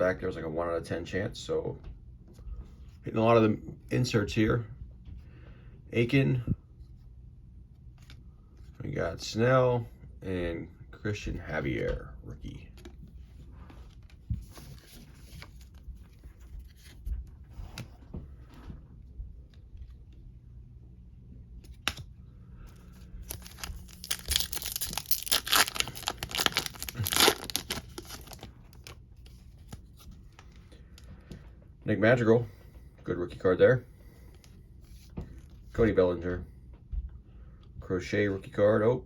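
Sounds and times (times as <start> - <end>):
rustling of wrapper and cards: 12.7 - 18.0, 21.6 - 31.1
wrapper tearing and crinkling: 23.2 - 29.0.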